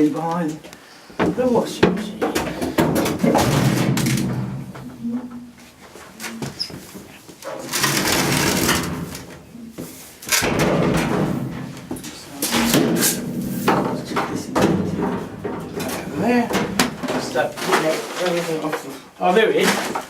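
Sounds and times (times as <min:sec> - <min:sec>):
knocks and bumps: 0:01.2 - 0:05.4, 0:07.7 - 0:18.4
objects scraping: 0:06.0 - 0:20.0.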